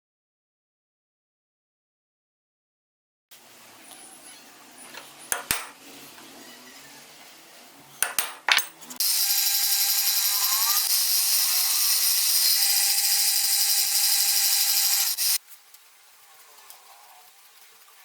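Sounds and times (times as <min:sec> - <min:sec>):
power tool whining while cutting: 0:09.0 - 0:15.4.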